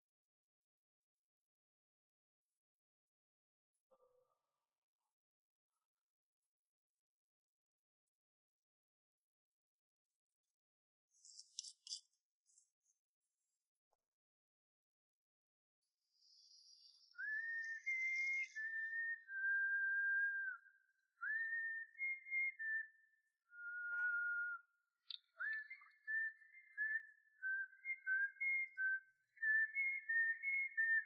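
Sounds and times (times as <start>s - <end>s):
person whistling a tune: 17.1s - 24.7s, 25.4s - 31.0s.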